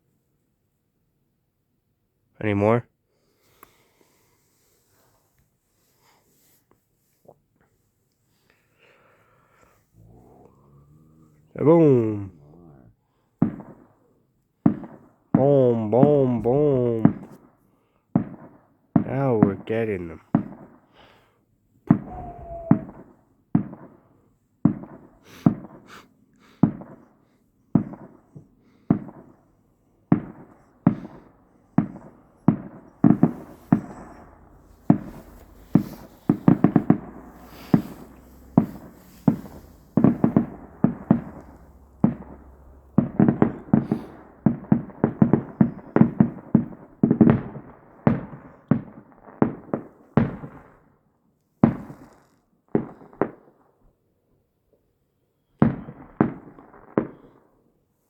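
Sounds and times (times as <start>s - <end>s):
faint crackling: 8.8s - 13.8s, 21.9s - 23.1s, 27.8s - 47.3s
distant fireworks booms: 8.8s - 14.0s, 14.6s - 17.6s, 18.2s - 21.2s, 21.9s - 50.8s, 51.6s - 52.2s, 52.8s - 53.5s, 55.6s - 57.4s.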